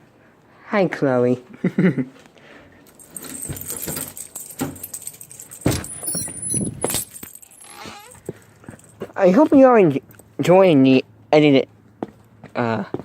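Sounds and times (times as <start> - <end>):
small metal pieces jingling: 2.9 - 9.0.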